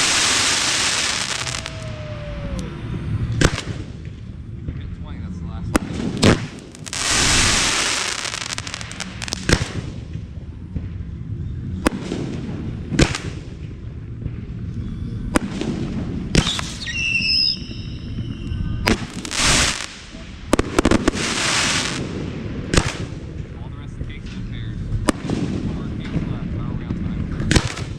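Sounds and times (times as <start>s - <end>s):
crackling hiss of fireworks: 0.0s - 2.7s, 3.4s - 26.7s
low rolling rumble: 0.0s - 16.9s, 17.6s - 27.5s
short high whistle: 16.8s - 18.8s.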